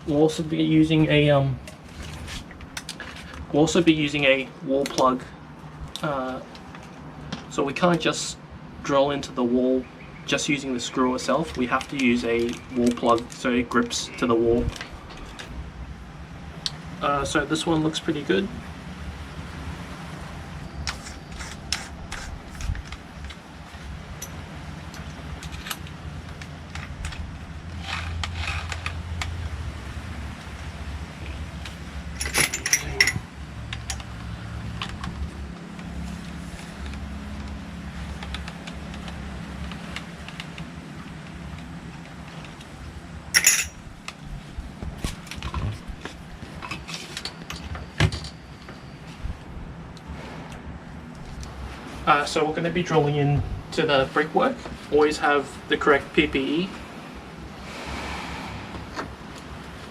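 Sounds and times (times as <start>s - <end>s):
low background hum: 0.0s - 57.7s
small tools clicking: 20.8s - 23.4s, 31.6s - 35.2s
small tools clinking and knocking: 31.6s - 34.1s, 43.3s - 43.8s.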